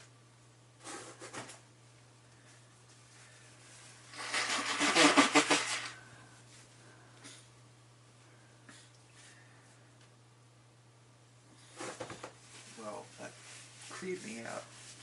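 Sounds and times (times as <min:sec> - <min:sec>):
man blowing nose: 0:04.1 - 0:06.0.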